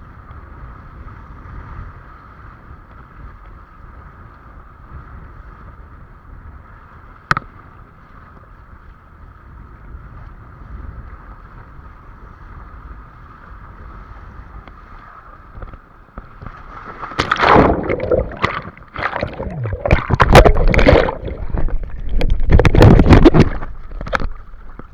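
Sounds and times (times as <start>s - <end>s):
water rushing and splashing: 16.8s - 24.9s.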